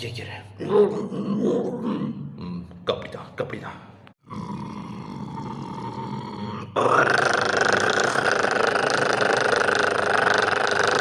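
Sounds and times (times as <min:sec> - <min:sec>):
man growling like a dinosaur: 0:04.2 - 0:11.0.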